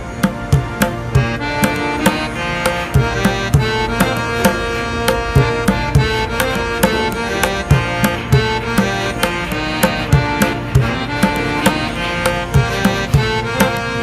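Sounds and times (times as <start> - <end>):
hand drums rhythm: 0.0 - 14.0
sustained melody: 0.0 - 14.0.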